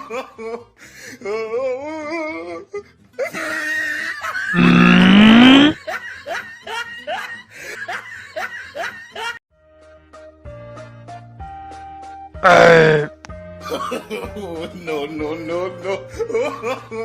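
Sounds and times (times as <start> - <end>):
music: 0.0 - 17.0
people laughing: 3.2 - 5.0, 5.7 - 9.4
loud rising cry: 4.6 - 5.8, 12.4 - 13.1
short rising yelps: 4.6 - 5.8, 12.4 - 13.1.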